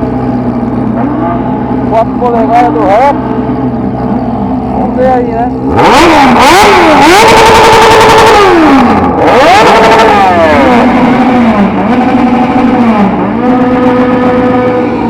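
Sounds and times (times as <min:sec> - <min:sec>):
engine revving hard: 0:05.6 - 0:15.0.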